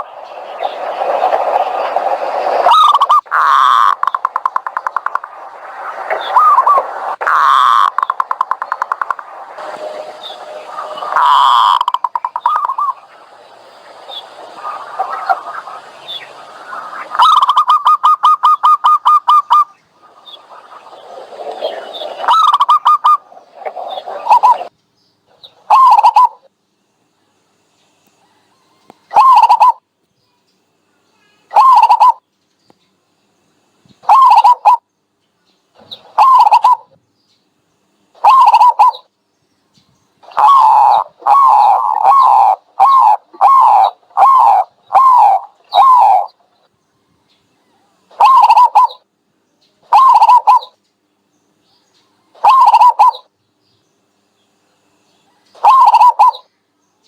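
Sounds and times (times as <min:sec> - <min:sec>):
dove calling: 0:00.0 - 0:24.7, 0:25.3 - 0:26.5, 0:28.5 - 0:29.8, 0:31.5 - 0:32.2, 0:34.0 - 0:34.8, 0:35.8 - 0:37.0, 0:38.2 - 0:39.1, 0:40.2 - 0:46.6, 0:47.6 - 0:49.1, 0:49.8 - 0:50.8, 0:52.3 - 0:53.3, 0:55.3 - 0:56.5.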